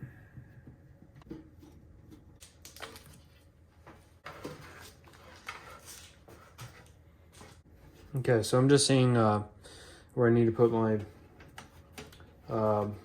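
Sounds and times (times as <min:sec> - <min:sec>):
computer parts handling noises: 0:04.2 - 0:08.1.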